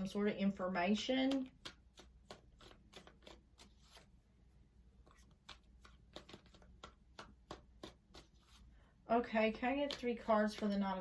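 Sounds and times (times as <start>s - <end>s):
cards clicking while shuffled: 1.2s - 4.1s, 5.0s - 8.6s, 9.5s - 11.0s.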